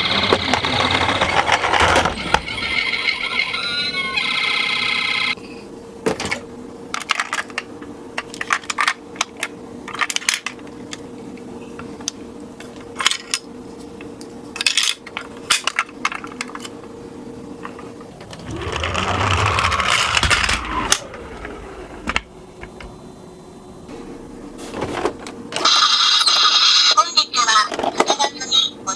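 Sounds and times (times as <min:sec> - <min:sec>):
toy car rolling down a slope: 0:00.1 - 0:04.4, 0:18.2 - 0:22.2
toy cars clicking and clattering: 0:18.3 - 0:21.0.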